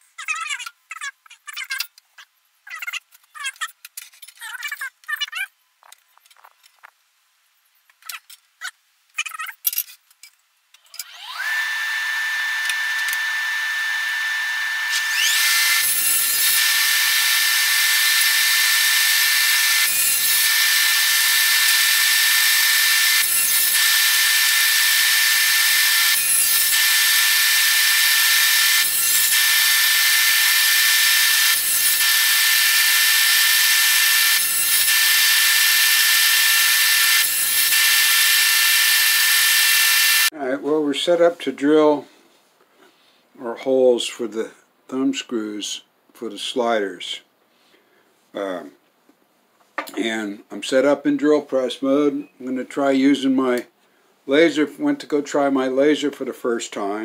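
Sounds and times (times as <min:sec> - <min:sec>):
motor whining: 0:11.0 - 0:15.9.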